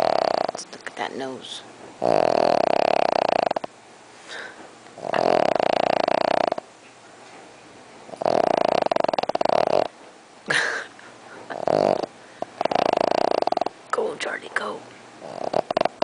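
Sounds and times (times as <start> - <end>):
dog snoring: 0.0 - 0.7, 2.0 - 3.7, 4.4 - 6.7, 8.1 - 9.9, 11.4 - 13.8, 15.2 - 16.0
dog snorting: 0.0 - 0.7, 2.0 - 3.7, 5.0 - 6.7, 8.1 - 9.9, 11.4 - 13.8, 15.2 - 16.0.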